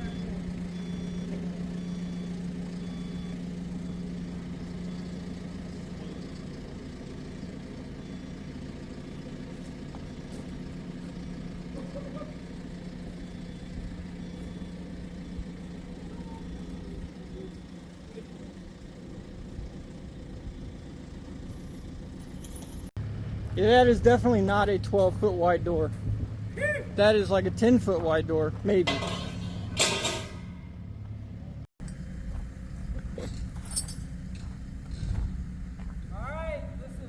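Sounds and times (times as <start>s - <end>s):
faint repeating beep: 0.0s - 4.0s
vehicle engine idling: 0.0s - 37.0s.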